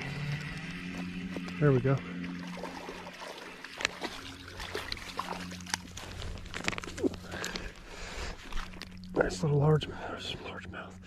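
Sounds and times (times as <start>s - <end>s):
creek water splashing: 0.0s - 9.4s.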